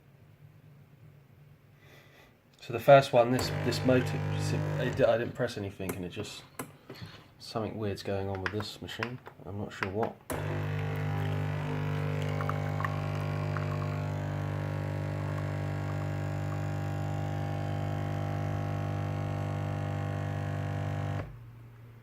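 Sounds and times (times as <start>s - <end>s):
coffee machine pump humming: 3.3s - 5.4s, 10.3s - 21.4s.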